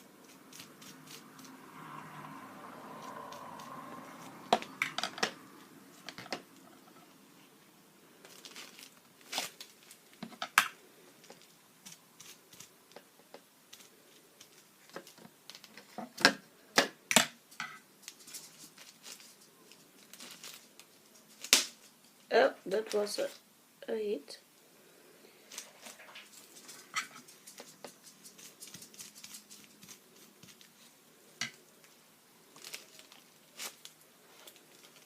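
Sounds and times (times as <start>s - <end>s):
bubble wrap crinkling: 0.0s - 1.7s, 8.2s - 16.2s, 18.0s - 23.4s, 25.5s - 31.1s, 31.8s - 35.0s
bubble wrap snaps: 20.0s - 21.9s.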